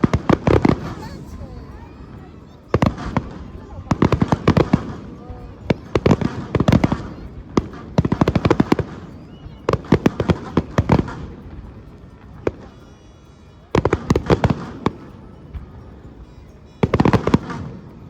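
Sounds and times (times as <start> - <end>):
fireworks crackling and banging: 0.0 - 13.1.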